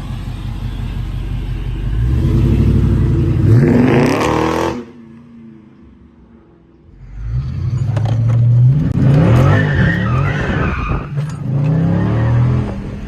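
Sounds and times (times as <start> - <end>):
car engine accelerating hard: 1.8 - 5.0.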